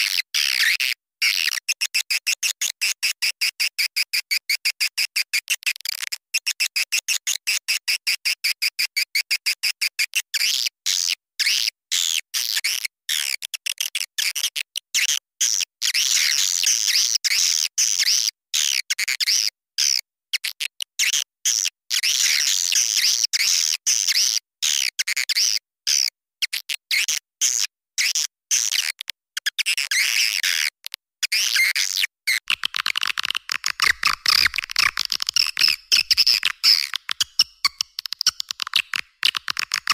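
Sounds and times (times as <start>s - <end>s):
swiftlets twittering: 32.5s - 39.9s.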